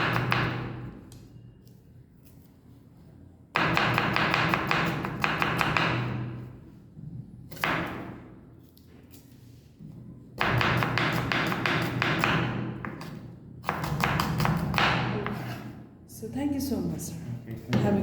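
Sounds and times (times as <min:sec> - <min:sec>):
knife chopping on cutting board: 0:10.4 - 0:15.7.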